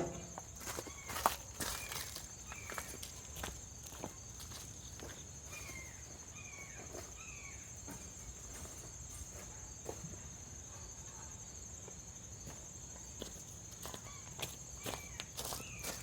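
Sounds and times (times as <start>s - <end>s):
crickets trilling: 0.0s - 16.0s.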